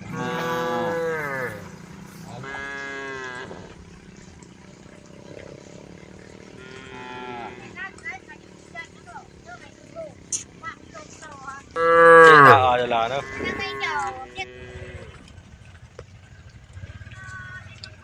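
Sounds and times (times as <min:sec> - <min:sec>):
cattle mooing: 0:00.0 - 0:03.8, 0:05.2 - 0:07.9, 0:11.7 - 0:15.2.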